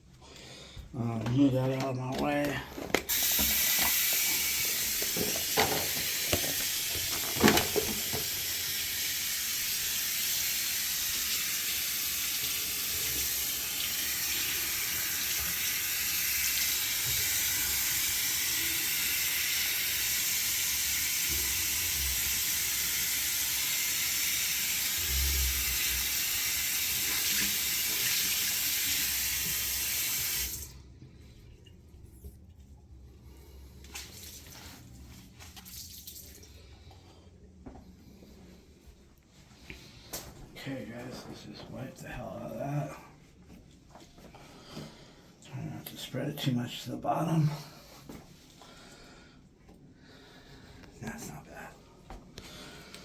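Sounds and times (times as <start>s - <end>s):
water running from a tap: 3.1s - 30.8s, 33.3s - 37.0s.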